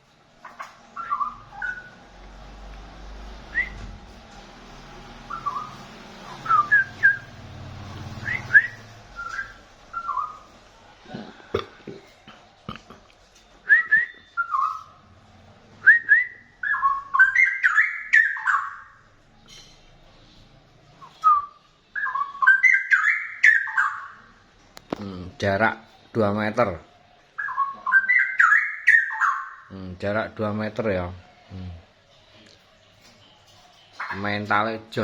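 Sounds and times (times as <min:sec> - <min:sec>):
bird singing whistled phrases: 0:01.0 - 0:02.0, 0:03.5 - 0:03.9, 0:05.3 - 0:05.8, 0:06.4 - 0:07.4, 0:08.2 - 0:10.5, 0:13.7 - 0:15.0, 0:15.8 - 0:19.0, 0:21.0 - 0:24.2, 0:27.4 - 0:29.7.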